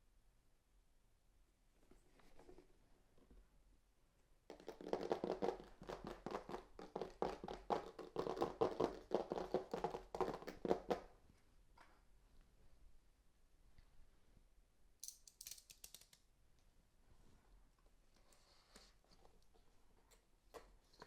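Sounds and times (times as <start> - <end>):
hands tapping and clicking: 4.5 - 11.0.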